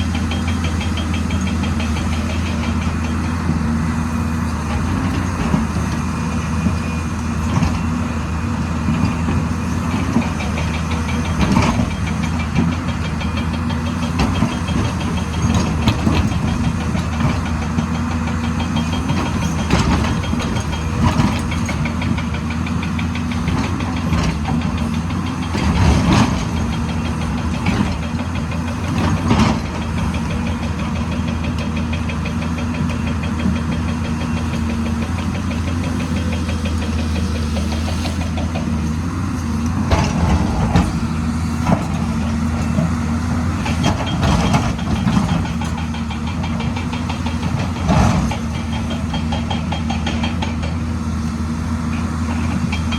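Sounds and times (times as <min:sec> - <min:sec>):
diesel engine running: 0:00.0 - 0:52.9
loud clanks and knocks: 0:10.1 - 0:51.0.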